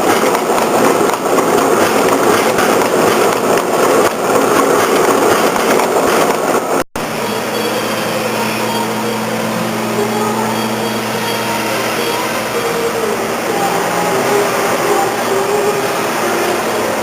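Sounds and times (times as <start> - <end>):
machine clatter: 0.0 - 6.8
machine hum with low tone: 7.0 - 17.0.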